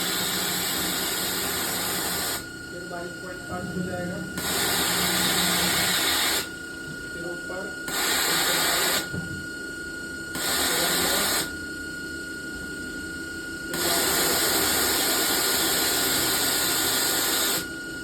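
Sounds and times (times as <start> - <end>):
hissing machining noise: 0.0 - 6.6, 7.2 - 9.2, 10.4 - 11.6
machine high whine: 0.0 - 18.0.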